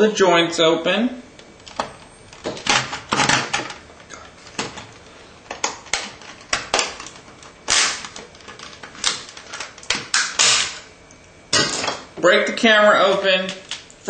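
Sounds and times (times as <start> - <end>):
plastic scraping crack: 1.5 - 10.9.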